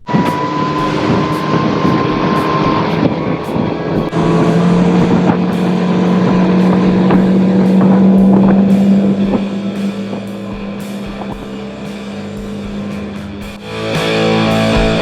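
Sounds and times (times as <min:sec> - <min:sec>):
outboard motor running at speed: 0:04.0 - 0:12.7.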